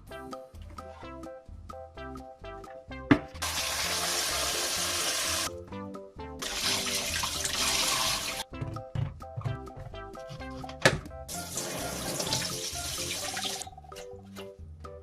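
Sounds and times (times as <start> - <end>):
background music: 0.0 - 15.0
water running: 3.4 - 5.5, 6.4 - 8.4, 11.3 - 13.7.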